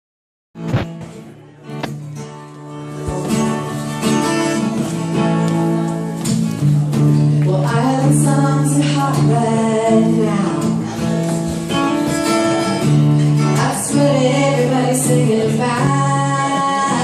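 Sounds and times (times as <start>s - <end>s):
strummed acoustic guitar: 0.6s - 17.0s.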